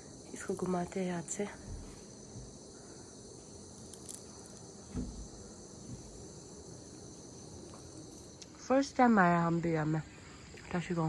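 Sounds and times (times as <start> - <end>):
insects droning: 0.0 - 11.0
dull thump: 4.8 - 6.2.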